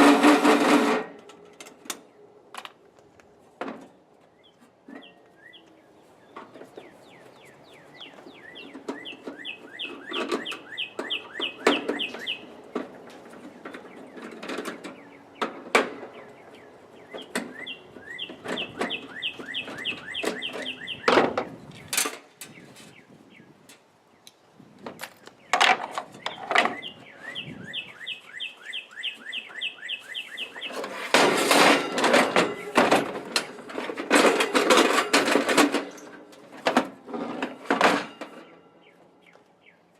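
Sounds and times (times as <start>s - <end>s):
metal clatter and knocks: 30.6s - 38.6s.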